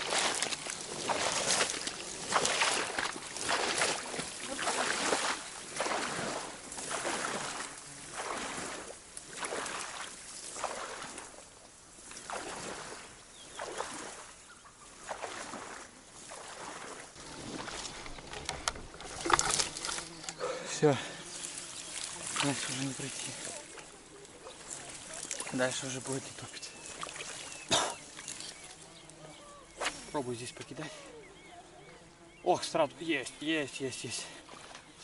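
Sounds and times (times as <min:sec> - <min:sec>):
plants swishing: 0:00.0 - 0:07.6, 0:15.2 - 0:28.8
wading through water: 0:00.0 - 0:35.0.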